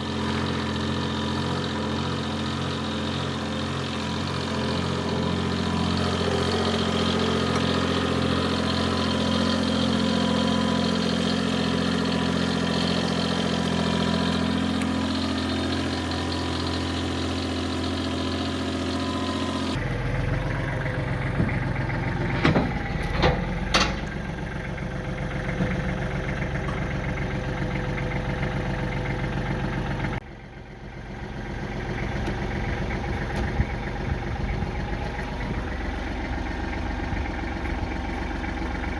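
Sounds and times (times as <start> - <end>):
tractor engine idling: 0.0 - 38.9
metallic clanks: 21.2 - 24.5, 25.6 - 27.6.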